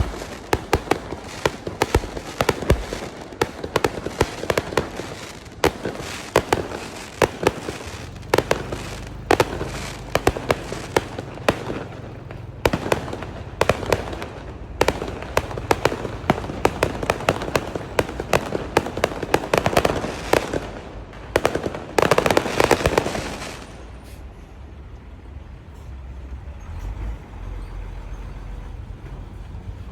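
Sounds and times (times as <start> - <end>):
fireworks bangs and crackle: 0.0 - 24.4.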